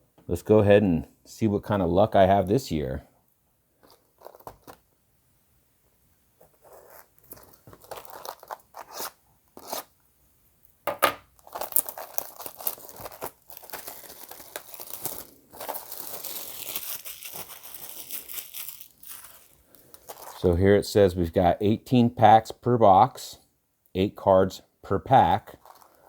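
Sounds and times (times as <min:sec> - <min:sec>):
plastic wrap crinkling: 0:03.8 - 0:04.9, 0:06.4 - 0:09.9, 0:11.3 - 0:20.5, 0:25.4 - 0:26.0
plastic wrap tearing: 0:06.8 - 0:09.9, 0:11.4 - 0:20.5, 0:25.5 - 0:26.0.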